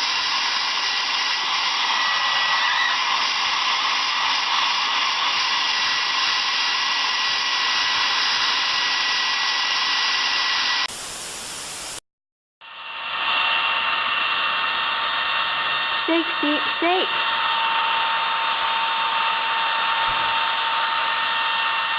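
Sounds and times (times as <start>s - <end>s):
flat hiss: 0.0s - 12.0s, 12.8s - 17.4s
hair dryer blowing: 0.0s - 12.0s, 12.7s - 21.9s.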